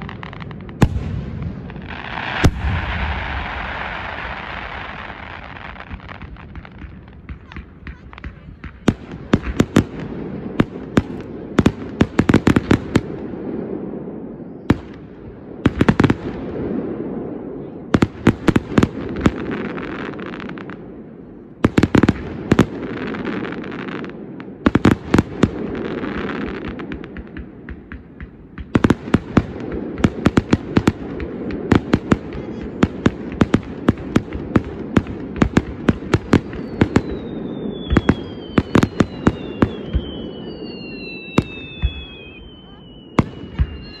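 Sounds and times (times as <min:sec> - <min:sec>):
fireworks bangs and crackling: 0:00.0 - 0:44.0
whistling tone falling in pitch: 0:39.4 - 0:44.0.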